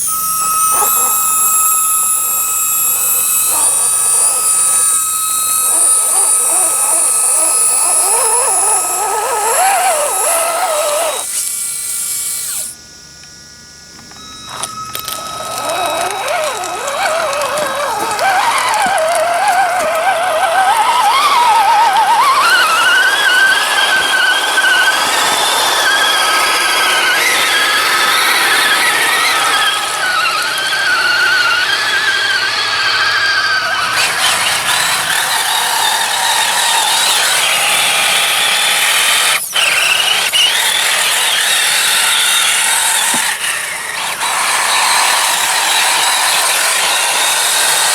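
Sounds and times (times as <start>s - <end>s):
rc truck motor whining: 0.0s - 47.9s.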